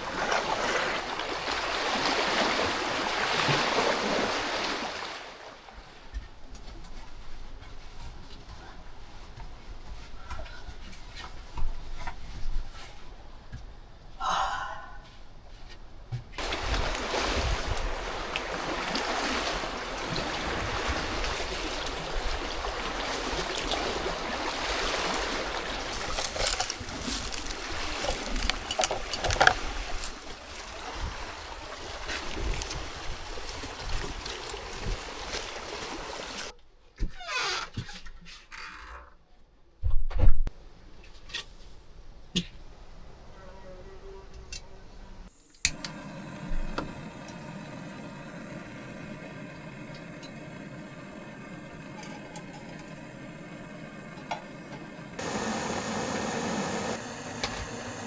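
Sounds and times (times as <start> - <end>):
water rushing and splashing: 0.0 - 5.7, 16.4 - 36.5, 55.1 - 58.0.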